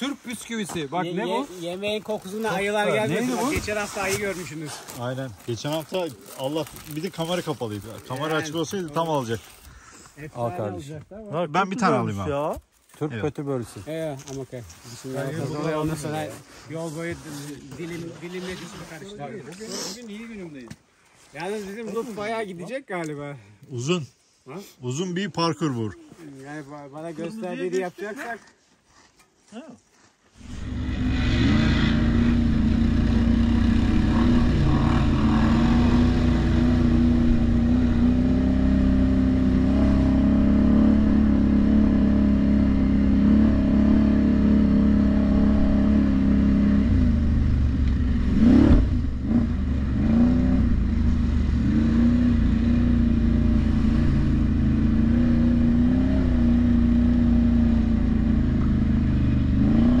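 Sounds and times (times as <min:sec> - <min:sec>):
atv engine running: 0:30.4 - 1:00.0.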